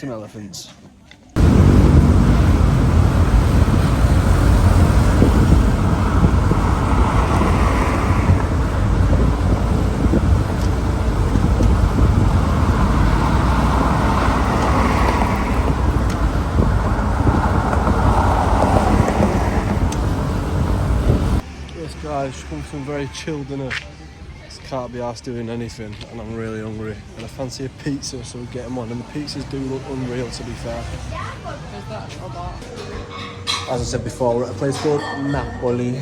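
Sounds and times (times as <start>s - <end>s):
car engine and road noise: 1.3s - 36.0s
wind buffeting microphone: 1.4s - 21.4s.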